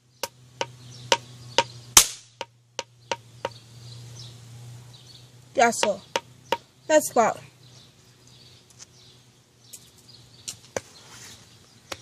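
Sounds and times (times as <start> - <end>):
cap gun bang: 2.0 - 2.3.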